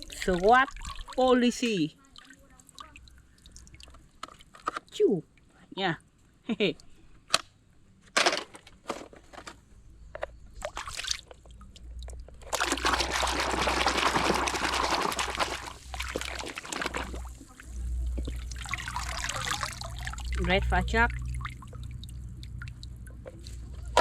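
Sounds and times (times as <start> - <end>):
water pouring over toys: 12.5 - 23.0.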